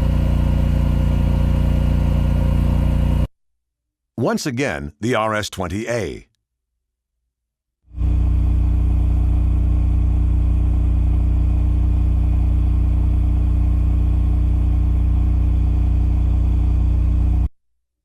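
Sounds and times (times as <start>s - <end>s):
generator engine hum: 0.0s - 3.3s.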